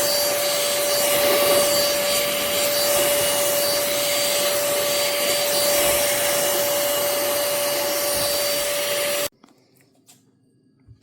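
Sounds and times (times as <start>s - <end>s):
handheld vacuum cleaner running: 0.0s - 9.3s.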